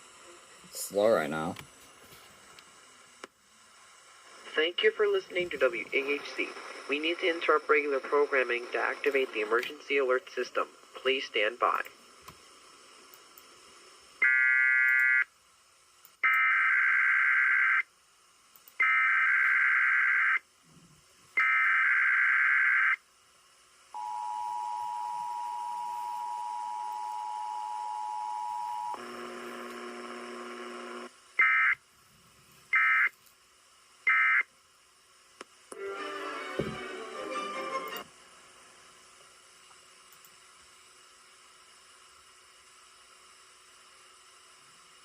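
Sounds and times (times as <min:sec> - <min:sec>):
low buzz: 0:24.0 - 0:31.1.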